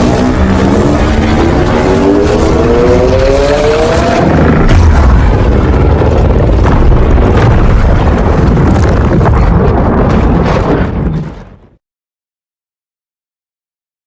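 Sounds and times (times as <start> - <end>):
distorted monster roar: 0.0 - 11.1.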